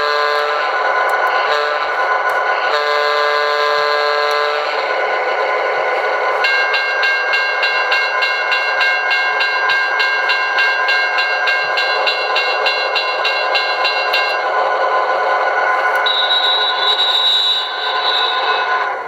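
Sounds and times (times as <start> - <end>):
diesel locomotive running through speaker: 0.0 - 19.0
bell ringing: 6.4 - 14.4.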